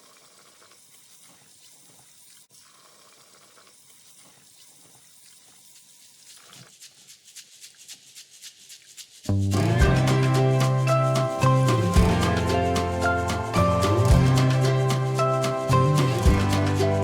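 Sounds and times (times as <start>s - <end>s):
faint running water: 0.0s - 17.0s.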